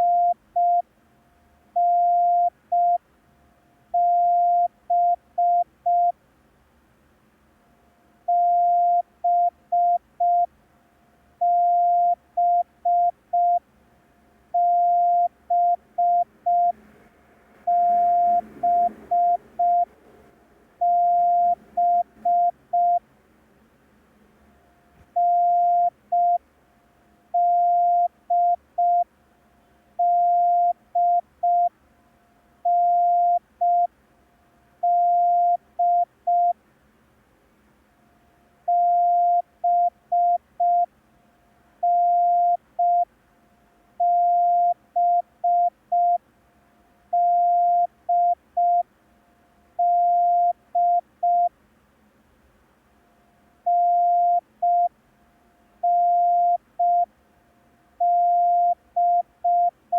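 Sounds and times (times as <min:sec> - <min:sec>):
morse code beeps: 0:00.0 - 0:00.8, 0:14.6 - 0:16.8, 0:17.7 - 0:19.9, 0:20.8 - 0:23.0, 0:25.2 - 0:26.4, 0:27.4 - 0:29.0, 0:30.0 - 0:31.7, 0:32.7 - 0:33.9, 0:34.9 - 0:36.5, 0:49.8 - 0:51.5, 0:53.7 - 0:54.9, 0:55.9 - 0:57.1, 0:58.0 - 0:59.8.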